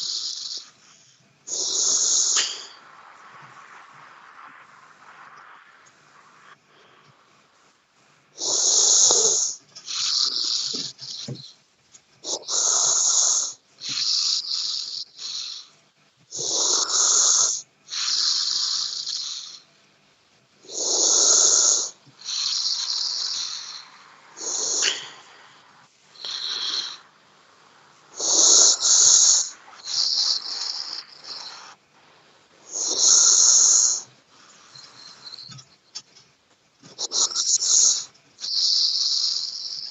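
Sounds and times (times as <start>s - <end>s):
person snoring: 0.0s - 0.8s, 1.5s - 2.8s, 8.4s - 11.5s, 12.2s - 15.7s, 16.4s - 19.6s, 20.7s - 27.1s, 28.1s - 31.8s, 32.6s - 34.1s.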